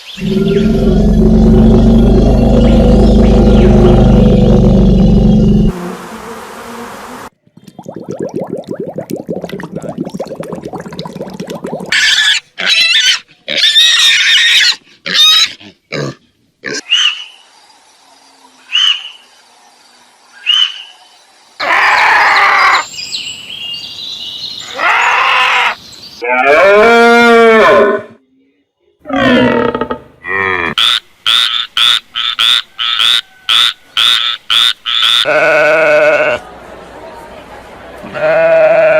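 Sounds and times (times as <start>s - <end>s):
long loud animal calls: 0.2s - 5.7s
low rapidly pulsing animal call: 0.2s - 6.0s.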